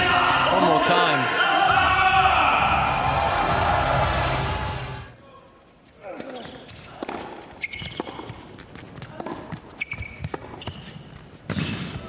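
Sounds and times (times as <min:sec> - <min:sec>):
shoe squeaks: 0:05.8 - 0:12.0
ball bouncing: 0:06.2 - 0:12.0
racquets striking ball: 0:06.4 - 0:12.0.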